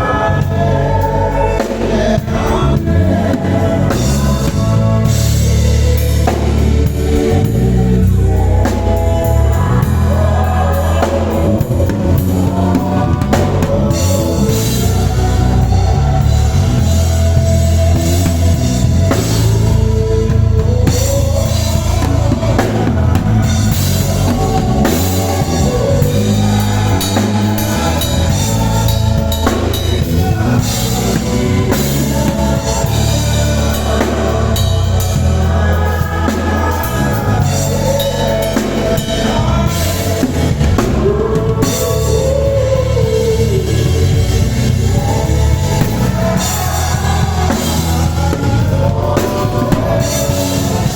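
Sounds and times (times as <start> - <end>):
live band playing: 0.0 - 50.9
people singing: 0.0 - 50.9.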